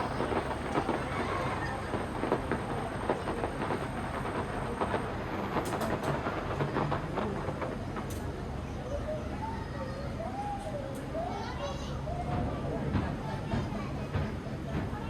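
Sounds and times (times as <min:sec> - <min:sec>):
fireworks exploding and crackling: 0:00.0 - 0:08.6
constant rumble: 0:00.0 - 0:15.0.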